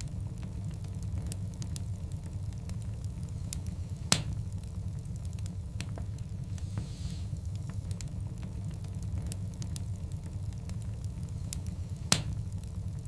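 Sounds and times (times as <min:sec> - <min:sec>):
log fire rumbling and crackling: 0:00.0 - 0:13.0
loud sharp fire pop: 0:04.1 - 0:04.4, 0:12.1 - 0:12.4.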